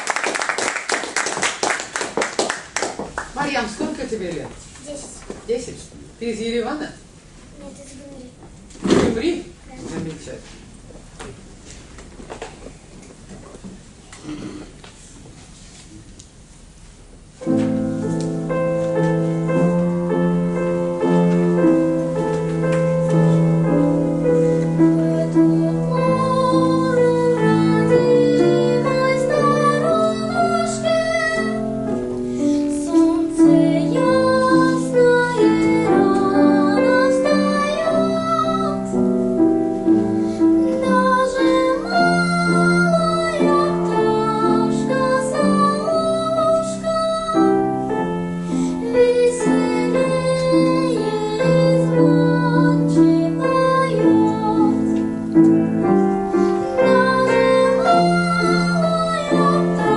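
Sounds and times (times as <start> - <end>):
piano accompaniment: 17.2 - 59.9
girl singing: 23.1 - 39.1, 39.8 - 55.1, 55.8 - 59.9.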